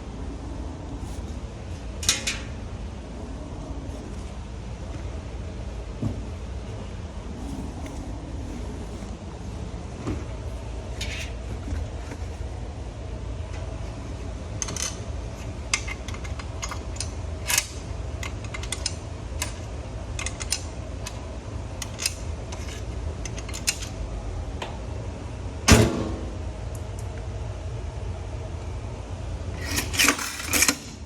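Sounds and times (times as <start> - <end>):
washing machine hum: 0.0 - 31.0.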